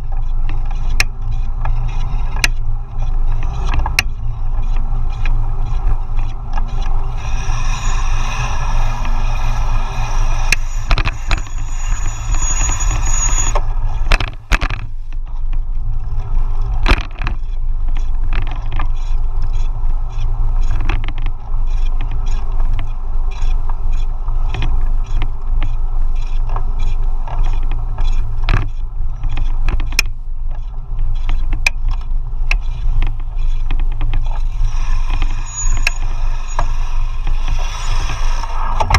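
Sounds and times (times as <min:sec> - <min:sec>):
high whine: 0:00.0 - 0:15.2, 0:32.2 - 0:38.9
heavy low rumble: 0:00.0 - 0:38.9.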